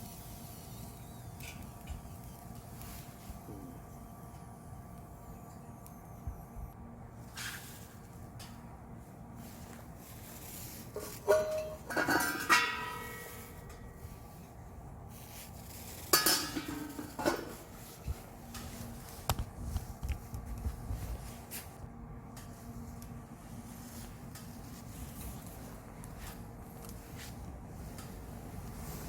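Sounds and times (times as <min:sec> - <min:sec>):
metal being handled: 0:09.4 - 0:13.8, 0:15.3 - 0:20.3
metal clanging: 0:11.0 - 0:13.5, 0:16.1 - 0:17.6.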